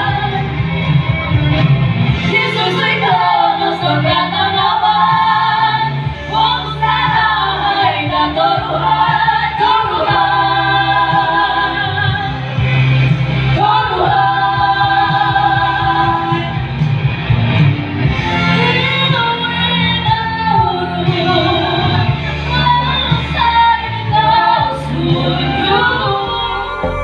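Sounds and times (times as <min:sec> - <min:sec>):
group chanting long sliding notes: 0:02.3 - 0:12.5, 0:23.4 - 0:27.0.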